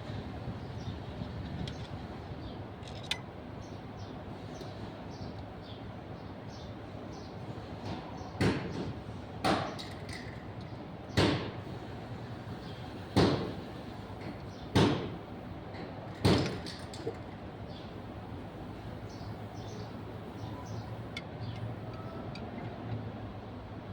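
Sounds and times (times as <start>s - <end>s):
sharp knocks: 13.2s - 15.2s.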